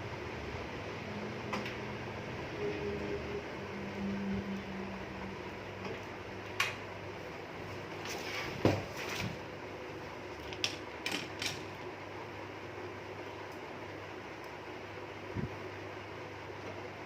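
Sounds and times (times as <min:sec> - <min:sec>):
low hum: 0:00.0 - 0:07.2.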